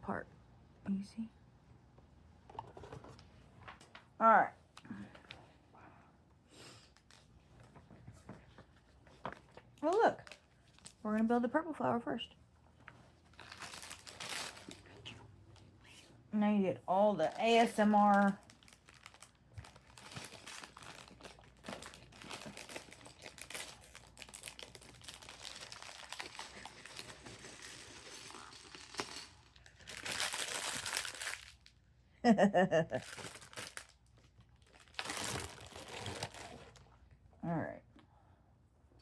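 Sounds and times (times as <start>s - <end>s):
plastic bag crinkling: 13.2s - 15.1s, 17.2s - 31.7s, 33.0s - 36.9s.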